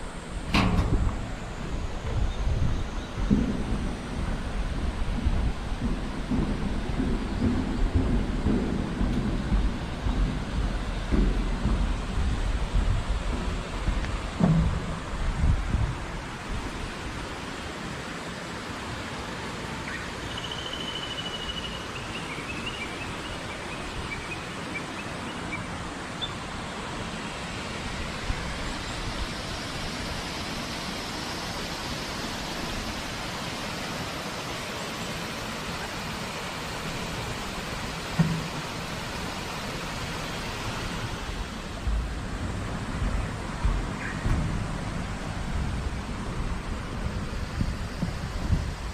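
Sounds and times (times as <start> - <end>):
river water rushing: 0.0 - 48.9
bird whistling descending notes: 19.9 - 24.8.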